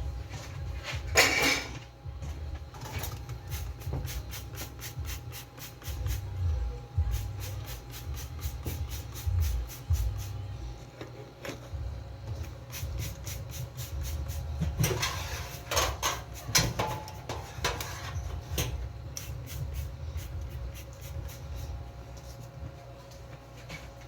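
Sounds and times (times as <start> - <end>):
low hum: 0.0 - 5.1, 5.8 - 24.0
clatter and scraping: 0.4 - 1.9, 14.6 - 18.8.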